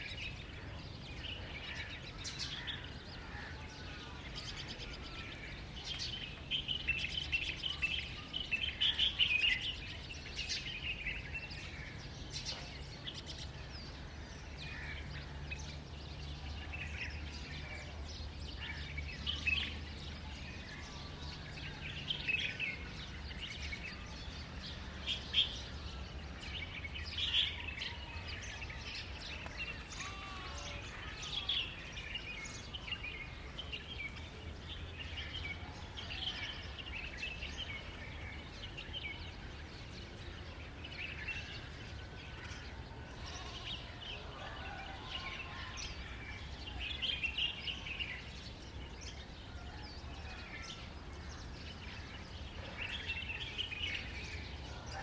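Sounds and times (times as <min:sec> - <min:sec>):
birds chirping: 0:00.0 - 0:55.0.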